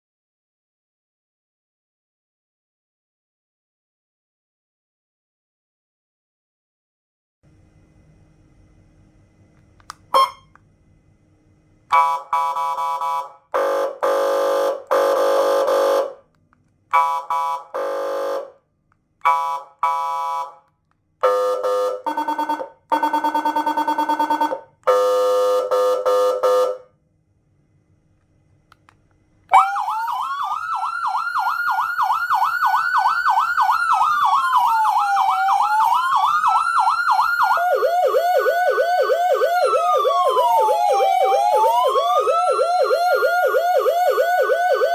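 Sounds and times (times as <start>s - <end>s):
siren blasts: 10.2s - 10.4s, 21.2s - 26.8s, 29.5s - 44.9s
fast warbling siren tone: 29.5s - 44.9s
siren wail: 29.5s - 44.9s.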